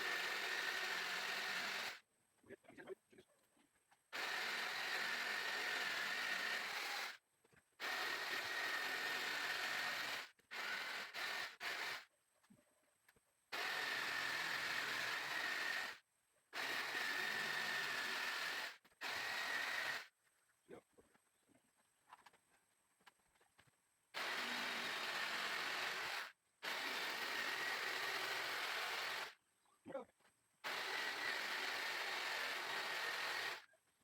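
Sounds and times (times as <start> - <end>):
electric saw cutting plywood: 0.0 - 2.0, 4.2 - 7.2, 7.8 - 12.0, 13.6 - 16.0, 16.6 - 20.1, 24.2 - 29.4, 30.6 - 33.6.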